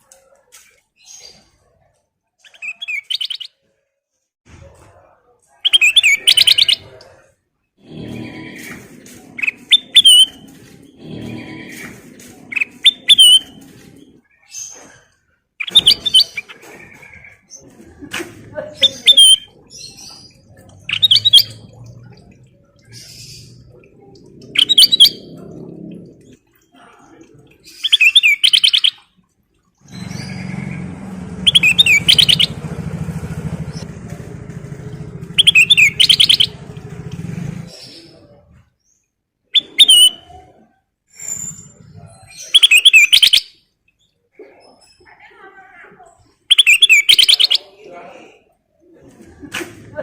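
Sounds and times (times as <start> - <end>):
bird singing warbling phrases: 2.4 - 3.6, 5.6 - 17.8, 18.5 - 29.2, 29.8 - 40.7, 41.4 - 45.2, 46.2 - 48.3
low rumbling noise: 19.4 - 26.6, 29.8 - 38.6.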